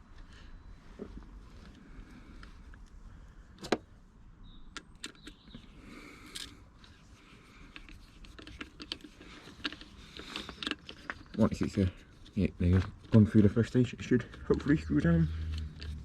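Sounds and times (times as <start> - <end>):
small hand tools clicking and scraping: 4.8 - 12.5, 13.1 - 16.0.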